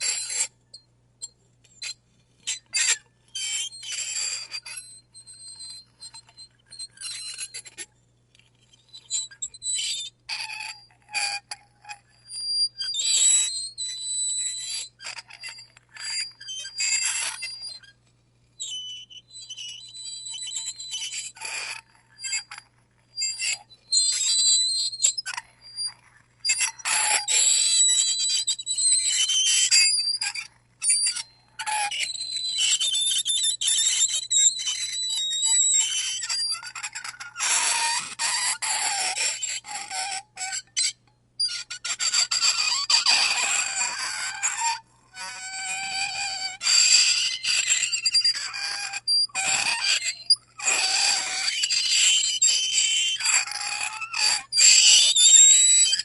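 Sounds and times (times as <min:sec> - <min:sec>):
fork screeching on a plate: 0:00.0 - 0:56.0
fork scraping a ceramic plate: 0:03.3 - 0:07.8, 0:41.4 - 0:56.0.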